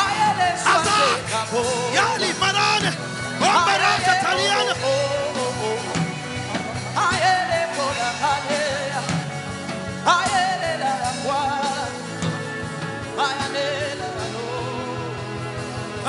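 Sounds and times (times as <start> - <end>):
person singing: 0.0 - 9.3
sustained musical backing: 0.0 - 16.0.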